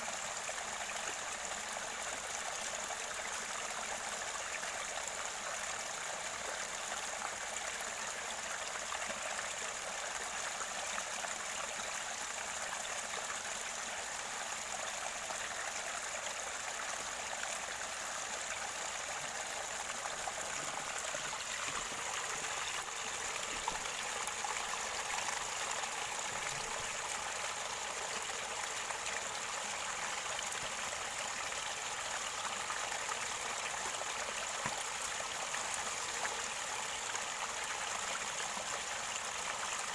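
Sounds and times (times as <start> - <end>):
river water gurgling: 12.0 - 39.9.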